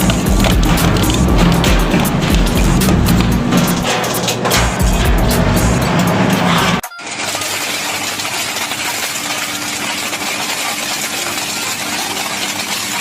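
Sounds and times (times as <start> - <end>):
metallic rattling clatter: 0.0 - 13.0
motor humming: 0.0 - 13.0.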